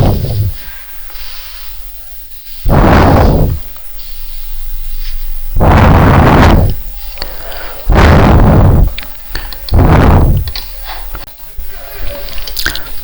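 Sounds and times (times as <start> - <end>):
rustling: 0.0 - 11.2
loud rushes of noise: 2.7 - 3.7, 5.6 - 6.8, 7.9 - 9.0.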